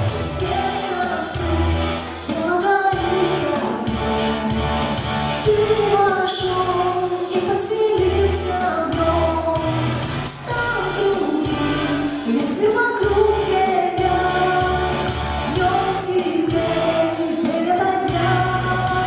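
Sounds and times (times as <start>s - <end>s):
backing track with beat: 0.0s - 19.0s
girl singing pop song: 0.0s - 19.0s.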